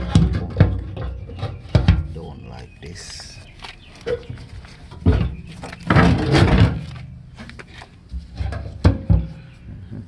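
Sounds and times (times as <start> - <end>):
parts rattling clatter: 3.5 - 10.0.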